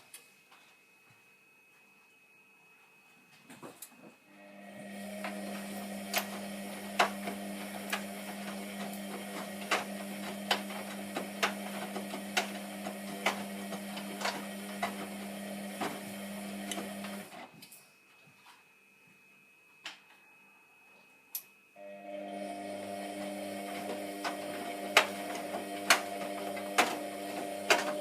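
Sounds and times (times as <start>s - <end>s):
washing machine motor hum: 4.3s - 17.4s, 21.8s - 28.0s.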